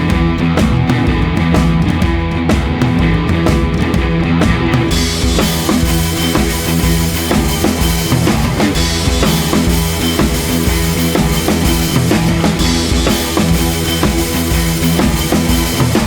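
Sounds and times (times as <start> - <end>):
rock music with drum kit: 0.0 - 16.0
cymbals: 4.9 - 16.0.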